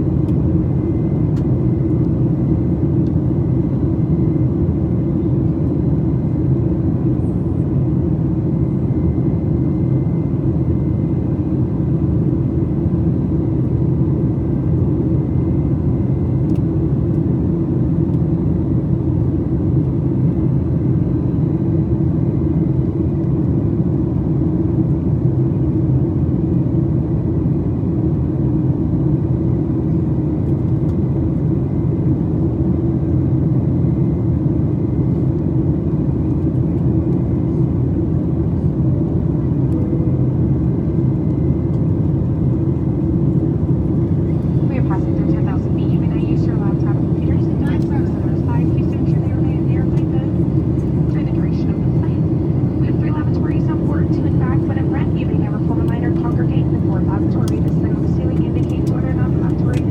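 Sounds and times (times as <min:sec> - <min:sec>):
aircraft cabin engine drone: 0:00.0 - 0:59.9.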